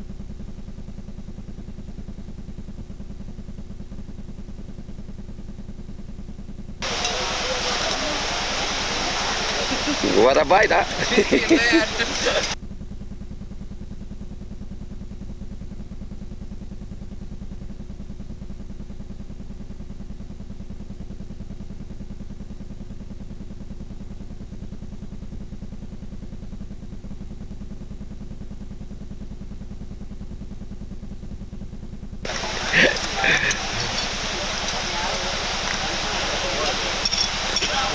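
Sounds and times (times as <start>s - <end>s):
steady low engine hum: 6.6s - 12.6s, 25.6s - 37.9s.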